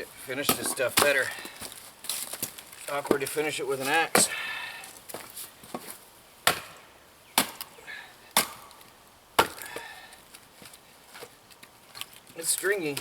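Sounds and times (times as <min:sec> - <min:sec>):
axe chopping firewood: 0:00.3 - 0:01.7, 0:02.4 - 0:04.4, 0:05.7 - 0:10.0.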